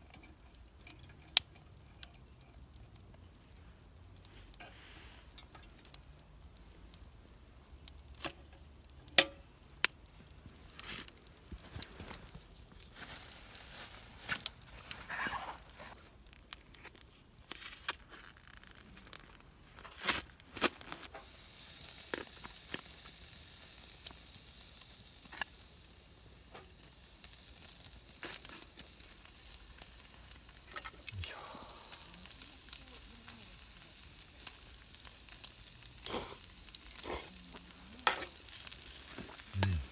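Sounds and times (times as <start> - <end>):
rustling and crackling: 10.0 - 21.1.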